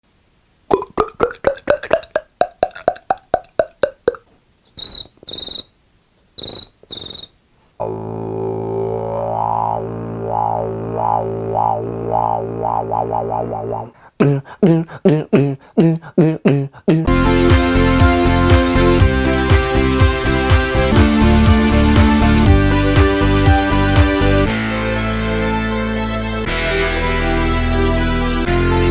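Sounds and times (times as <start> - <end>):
short pitched pulses: 6.4 - 14.8
buzzing drone with wah sweep: 7.8 - 13.9.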